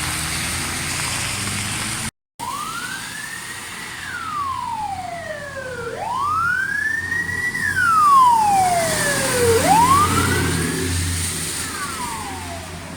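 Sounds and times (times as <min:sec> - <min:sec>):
truck engine rumble: 0:00.0 - 0:12.9
fire engine siren wailing: 0:02.4 - 0:12.9
second fainter siren: 0:02.4 - 0:12.9.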